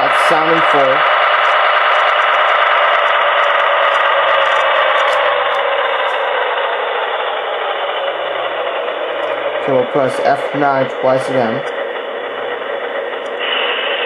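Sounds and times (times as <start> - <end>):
tinny model locomotive engine drone: 0.0 - 14.0.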